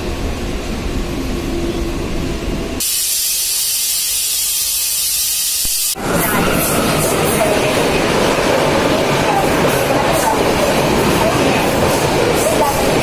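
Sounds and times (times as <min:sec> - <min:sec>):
train rumbling: 0:00.0 - 0:03.4, 0:05.5 - 0:13.0.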